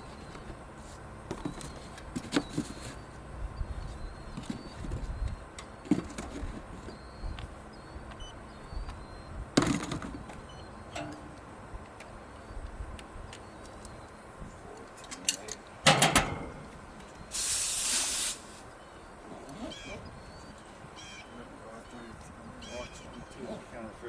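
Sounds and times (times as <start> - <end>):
pressurised gas hissing: 17.3 - 18.7.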